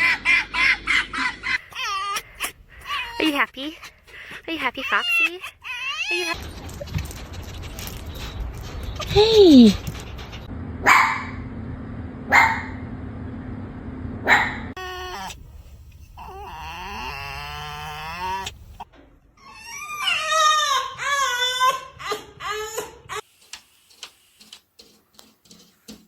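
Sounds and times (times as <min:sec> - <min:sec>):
fox whining and whimpering: 0:01.6 - 0:08.0, 0:16.1 - 0:23.2.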